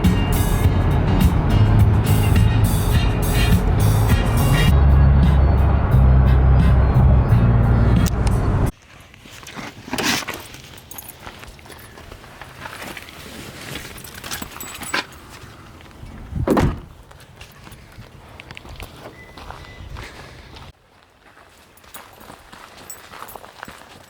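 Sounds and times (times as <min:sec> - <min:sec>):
music with steady beat: 0:00.0 - 0:08.4.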